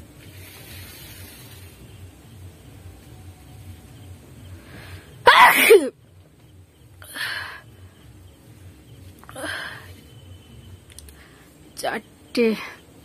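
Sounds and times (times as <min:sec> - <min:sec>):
woman sneezing: 0:05.2 - 0:05.9
soft breathy sounds: 0:09.2 - 0:10.1.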